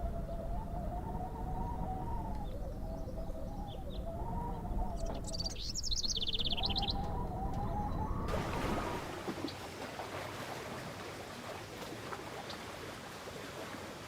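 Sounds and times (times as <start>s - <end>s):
bird warbling call: 0.0s - 8.3s
running water rushing: 8.3s - 14.0s.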